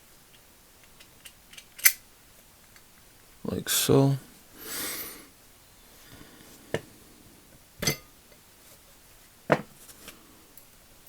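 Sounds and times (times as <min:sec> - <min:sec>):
metal ratchet parts clinking: 0:01.2 - 0:02.0.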